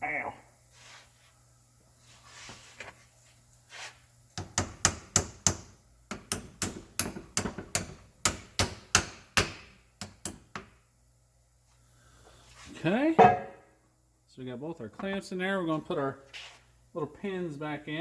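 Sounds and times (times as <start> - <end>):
hammer tapping metal: 13.2 - 13.6.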